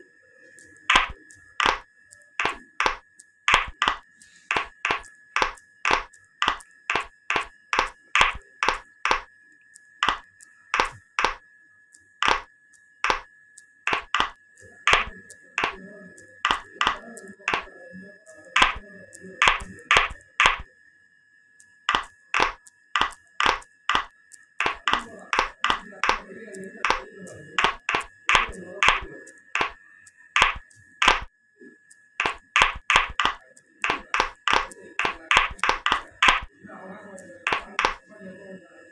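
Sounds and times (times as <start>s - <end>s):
sharp clicks: 0.6s - 11.4s, 12.2s - 13.3s, 13.9s - 20.7s, 21.9s - 31.3s, 32.2s - 36.6s, 37.2s - 38.2s
sharp claps: 0.9s - 1.8s, 2.4s - 9.3s, 10.0s - 11.4s, 12.2s - 13.3s, 13.9s - 15.8s, 16.5s - 17.7s, 18.5s - 18.8s, 19.4s - 20.7s, 21.9s - 29.8s, 30.4s - 31.3s, 32.2s - 36.5s, 37.2s - 38.0s.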